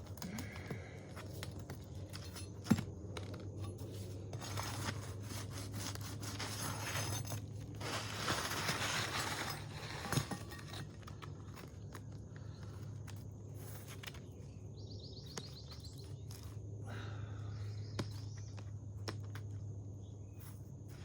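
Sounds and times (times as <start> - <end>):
scraping on roof shingles: 0.6 - 12.6.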